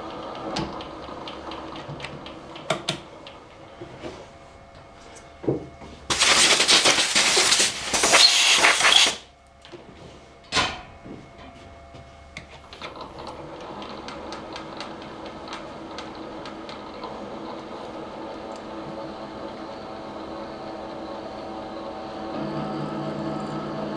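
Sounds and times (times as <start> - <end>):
loud hiss: 6.1 - 9.3.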